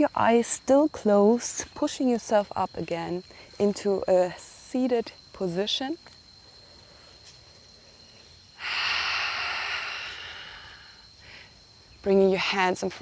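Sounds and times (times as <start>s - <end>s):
high insect tone: 0.0s - 13.0s
person exhaling: 8.6s - 11.5s.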